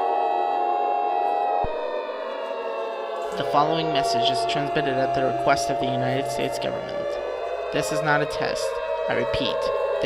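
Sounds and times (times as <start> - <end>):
electronic emergency alert tone: 1.1 - 2.2, 3.3 - 10.0.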